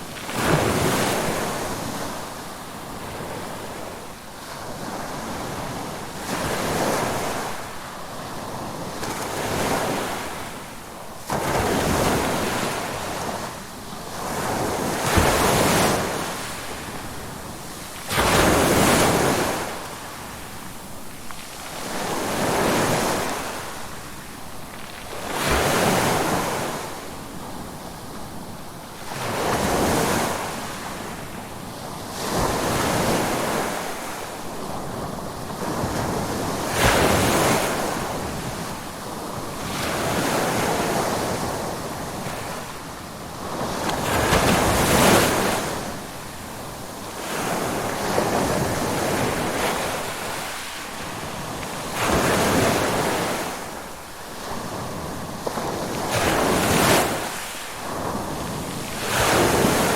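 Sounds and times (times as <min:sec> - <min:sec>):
ocean waves breaking: 0:32.1 - 0:59.9.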